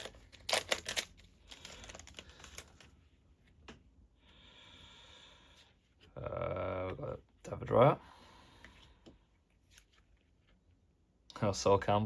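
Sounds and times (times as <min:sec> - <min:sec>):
cards rustling and scraping: 0:00.0 - 0:03.6, 0:09.3 - 0:10.6.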